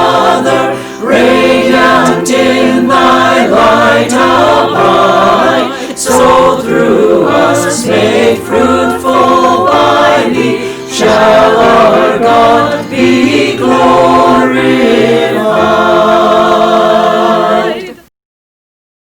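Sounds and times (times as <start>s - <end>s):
choir singing a hymn: 0.0s - 18.1s.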